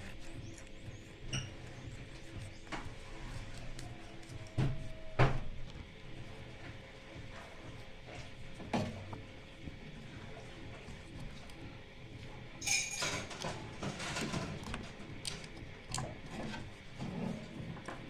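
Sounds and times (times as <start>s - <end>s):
scraping rattle: 12.6s - 17.5s.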